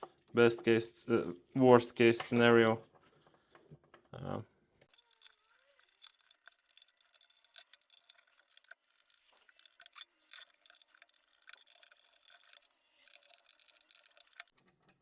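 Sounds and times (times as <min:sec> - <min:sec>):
small clicks and taps of handling wires: 0:04.8 - 0:15.0.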